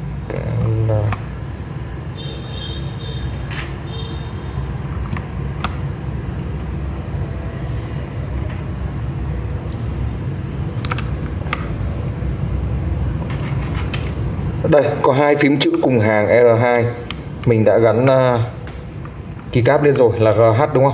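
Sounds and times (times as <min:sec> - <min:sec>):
steady low rumble: 0:04.2 - 0:15.1.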